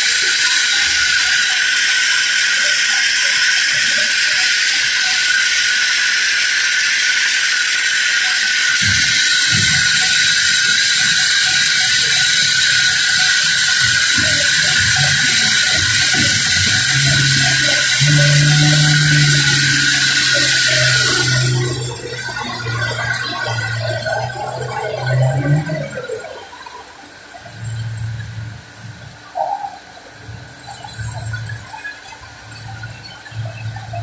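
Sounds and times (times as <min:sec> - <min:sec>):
sawmill machinery hissing: 0:00.0 - 0:26.2.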